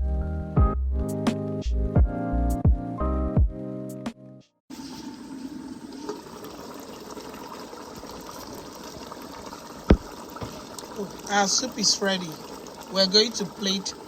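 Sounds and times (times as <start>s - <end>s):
pot of soup simmering: 4.7s - 14.0s.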